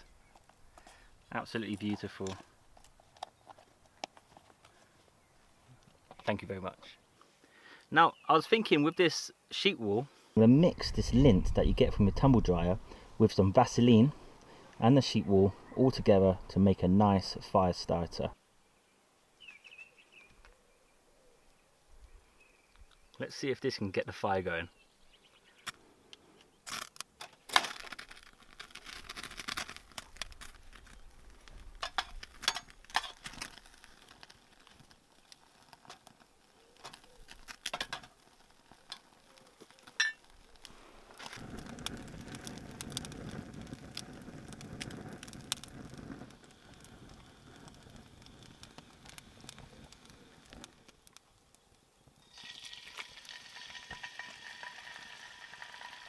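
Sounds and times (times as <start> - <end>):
low rushing of flame: 10.4 - 14.8, 27.9 - 51.7
fire starter strikes and scrapes: 26.7 - 36.2, 36.8 - 38.2, 38.8 - 51.0
frying sizzle: 31.2 - 51.2, 52.2 - 56.0.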